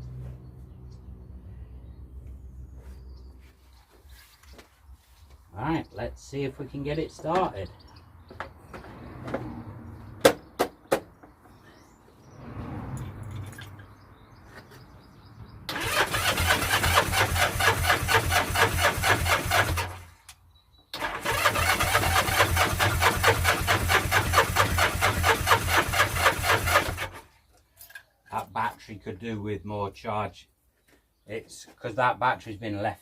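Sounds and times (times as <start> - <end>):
electric starter cranking engine: 15.7 - 20.1, 21.0 - 27.2.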